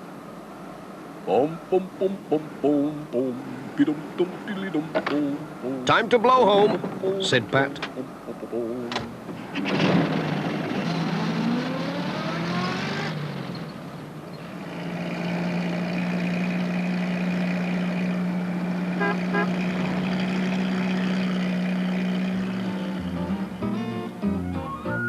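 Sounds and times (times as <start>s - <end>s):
van engine revving: 1.3s - 25.0s
horn toots: 18.9s - 20.0s.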